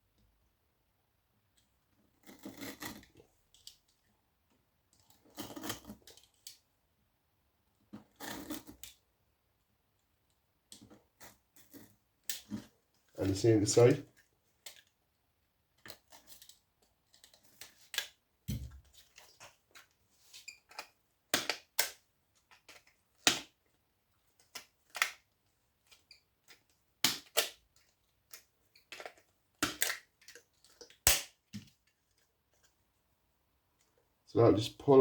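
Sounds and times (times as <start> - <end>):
knife snapping and cracking: 27.0 - 27.6, 28.9 - 30.4, 31.0 - 31.4.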